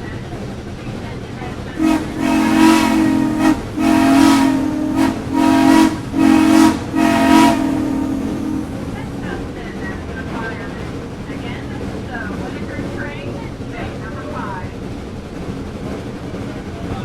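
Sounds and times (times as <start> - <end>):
train running noise: 0.0 - 17.0
steam locomotive whistle blasts: 1.8 - 9.2.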